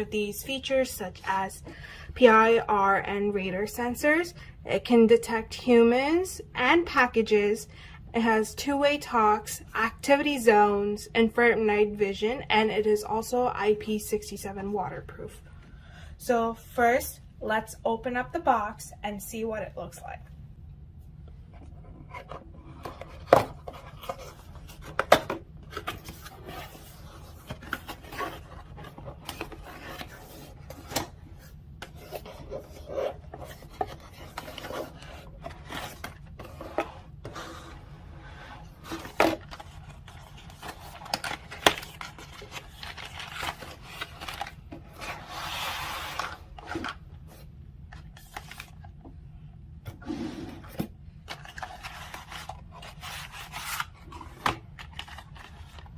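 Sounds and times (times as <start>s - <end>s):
cardboard scraping: 25.7s - 47.5s, 49.9s - 55.8s
cardboard rubbing and sliding: 44.9s - 46.9s.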